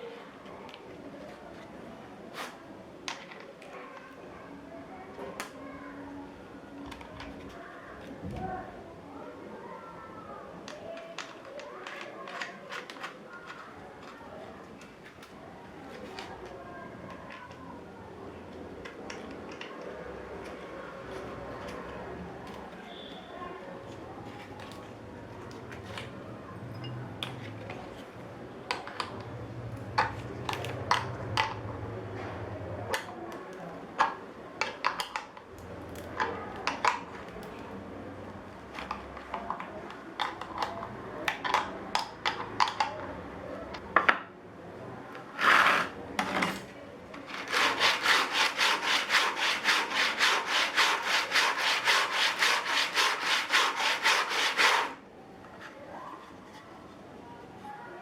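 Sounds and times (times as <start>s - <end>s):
sanding block handling clicks: 47.3s - 55.0s
sandpaper rubbing on wood: 47.3s - 55.0s.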